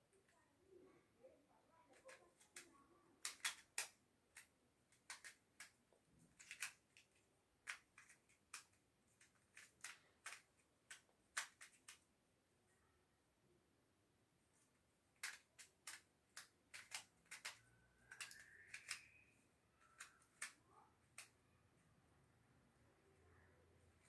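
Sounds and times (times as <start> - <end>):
puzzle cube clicking: 2.0 - 12.0, 15.2 - 21.4.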